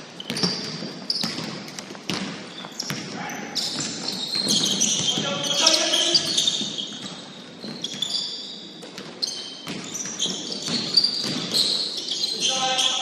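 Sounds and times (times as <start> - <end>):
basketball bouncing on court: 0.1 - 8.2, 8.8 - 12.3.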